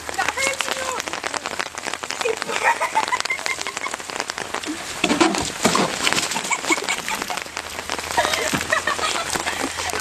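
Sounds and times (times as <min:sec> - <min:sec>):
heavy rain falling: 0:00.0 - 0:10.0.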